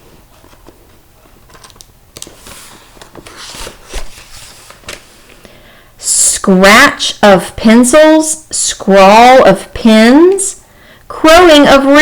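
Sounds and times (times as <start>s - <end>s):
page turning clicks and rustles: 0.0s - 5.4s.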